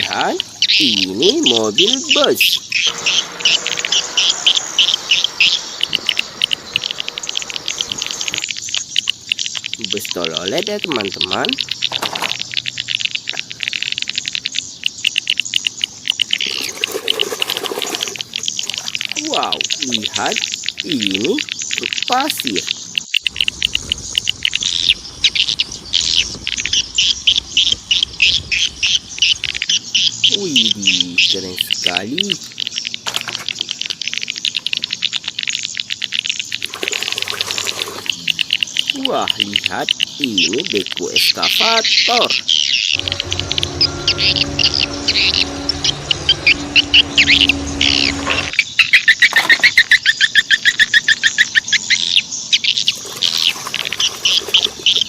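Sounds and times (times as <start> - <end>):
small animal chirping: 0.0 - 17.2, 18.0 - 55.0
fast bird trill: 0.0 - 55.0
low steady hum: 42.9 - 48.6.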